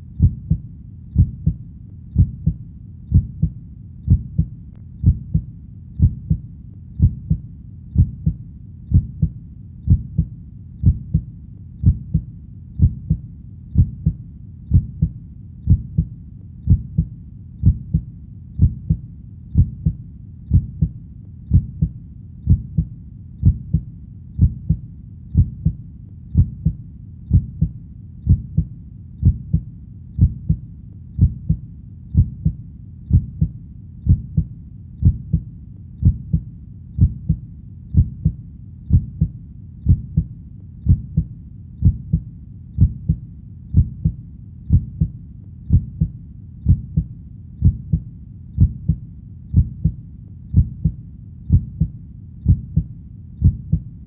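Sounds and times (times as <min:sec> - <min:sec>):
heartbeat thumps: 0:00.0 - 0:30.6, 0:31.2 - 0:54.0.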